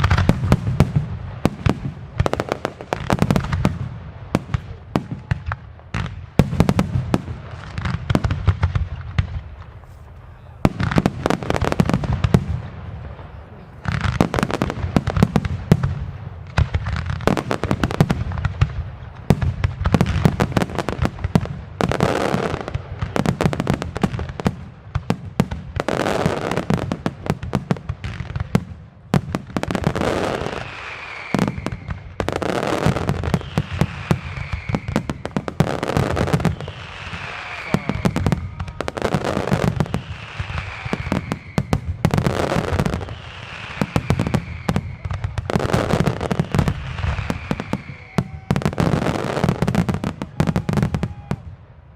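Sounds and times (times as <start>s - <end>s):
fireworks booms and bangs: 0.0s - 51.9s
falling firework whistles: 29.8s - 51.4s.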